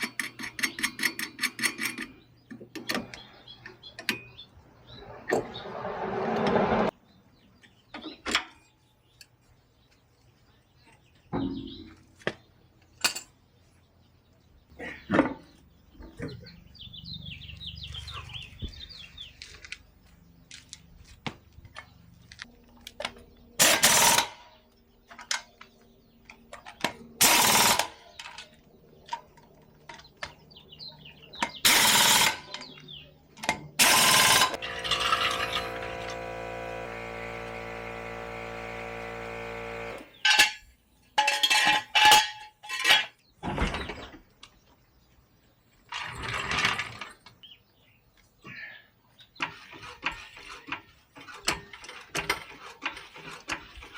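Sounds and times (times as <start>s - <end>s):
impact wrench bursts: 23.6s - 24.5s, 27.2s - 28.0s, 31.6s - 32.6s, 33.8s - 40.2s
steady mechanical hum: 33.8s - 40.2s.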